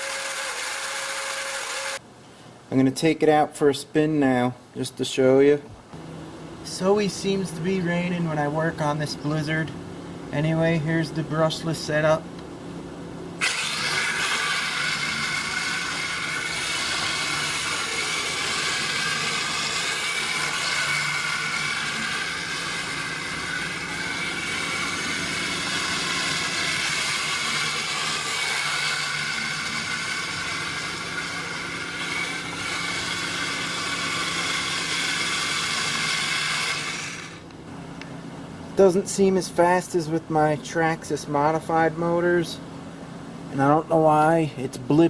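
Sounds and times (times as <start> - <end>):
electric motors whining: 0.0 - 2.0, 13.4 - 37.6
man talking: 2.7 - 5.7, 6.6 - 12.3, 38.8 - 42.6, 43.5 - 45.0.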